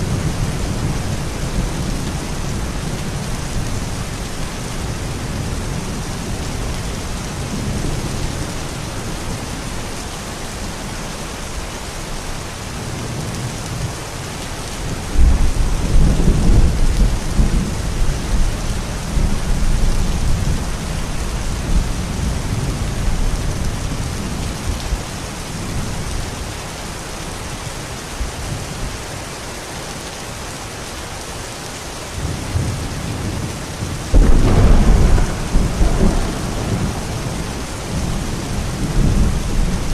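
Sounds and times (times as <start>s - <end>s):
heavy rain: 0.0s - 39.9s
rolling thunder: 14.9s - 24.2s, 34.1s - 39.9s.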